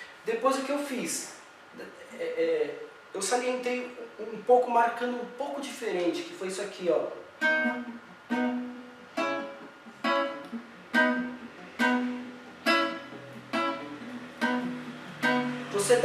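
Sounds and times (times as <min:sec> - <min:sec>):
acoustic guitar strumming reggae rhythm: 0:07.2 - 0:16.0.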